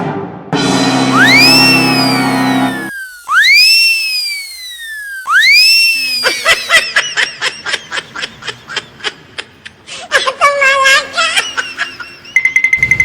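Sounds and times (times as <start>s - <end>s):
high sliding whistle tone: 1.0s - 7.0s.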